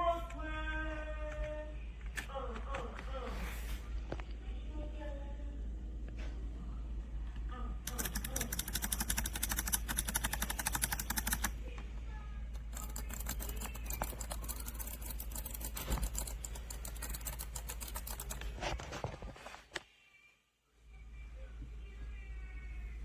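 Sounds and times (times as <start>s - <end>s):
keypad keys clicking: 7.9s - 11.5s, 12.6s - 18.5s.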